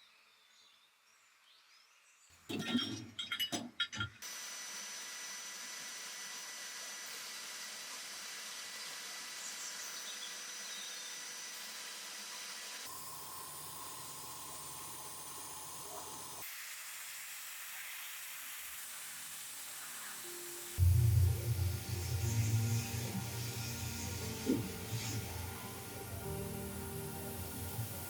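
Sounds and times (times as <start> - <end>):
steady hiss: 16.4 - 28.0.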